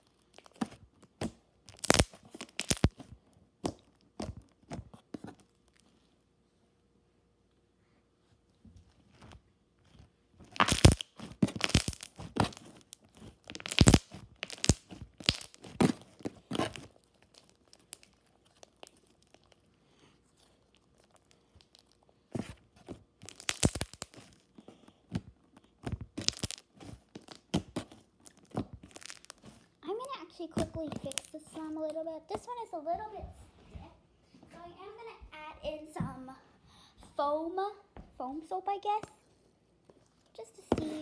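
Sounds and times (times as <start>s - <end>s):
slime squishing and crackling: 0.0s - 5.9s, 10.4s - 19.7s, 20.3s - 32.0s.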